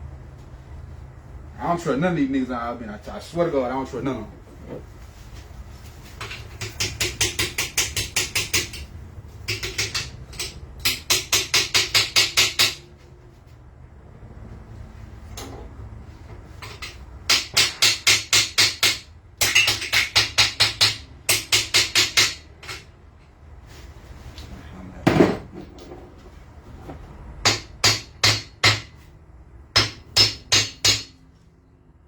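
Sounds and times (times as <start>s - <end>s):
hammer striking metal: 6.2s - 8.9s, 9.5s - 12.9s, 27.4s - 29.0s, 29.8s - 31.2s.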